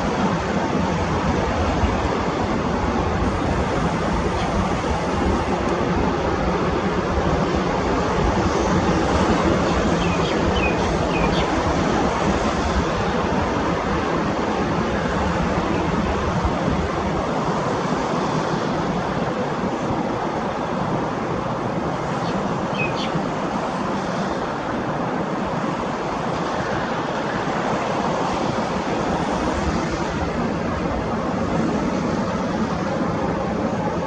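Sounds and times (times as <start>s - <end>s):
distant jet engine rumble: 0.0s - 34.0s
high chirp: 22.2s - 23.2s.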